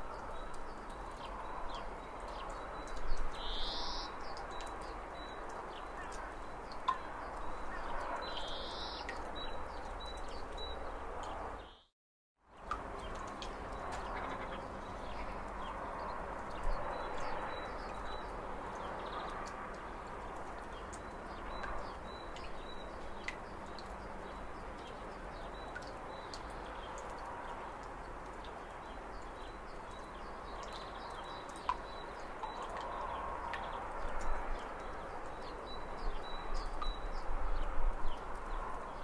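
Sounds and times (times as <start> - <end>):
small birds chirping: 7.5 - 11.9.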